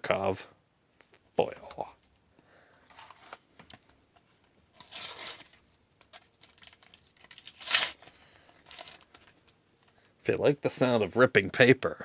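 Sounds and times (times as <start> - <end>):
paper pack ripping: 4.8 - 9.4.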